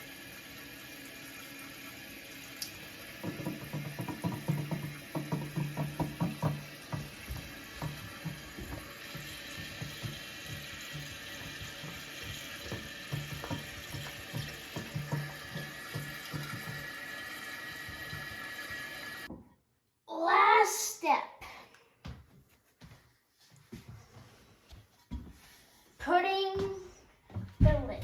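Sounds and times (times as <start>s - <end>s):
toilet refilling with water: 0.0s - 19.3s.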